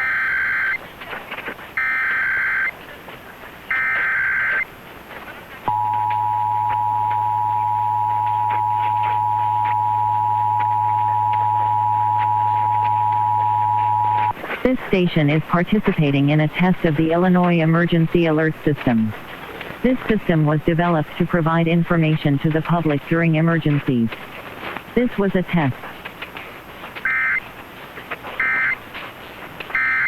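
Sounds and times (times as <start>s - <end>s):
faint static crackle: 0.0s - 30.0s
low hum: 5.6s - 19.3s
two-tone alert signal: 5.7s - 14.3s.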